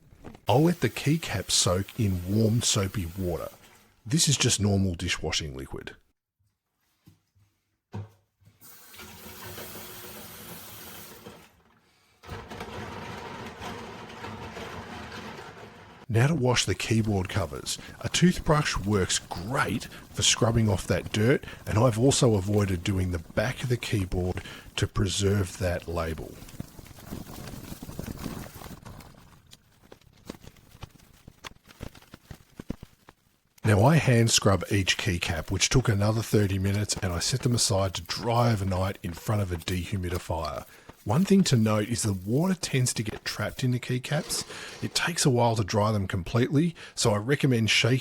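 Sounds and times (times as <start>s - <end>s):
toothbrush scrubbing plastic: 0.2s - 3.9s, 16.5s - 32.7s, 34.3s - 45.3s
tap water running into sink: 8.6s - 11.6s.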